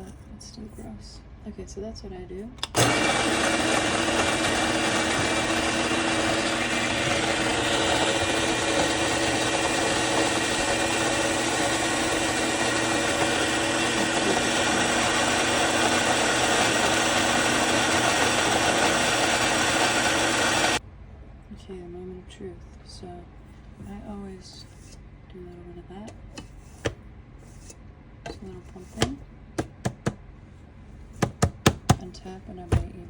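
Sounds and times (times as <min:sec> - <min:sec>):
coffee grinder running: 0:02.6 - 0:20.8.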